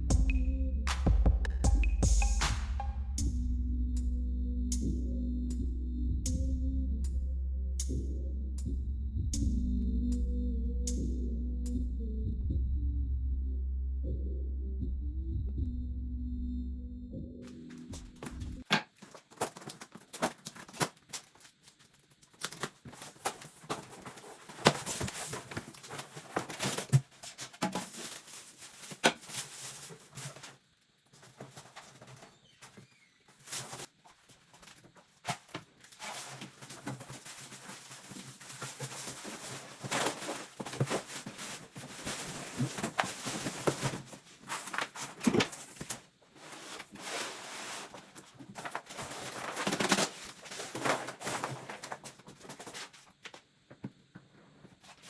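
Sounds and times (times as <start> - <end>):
rustling and tearing: 18.9 - 53.3.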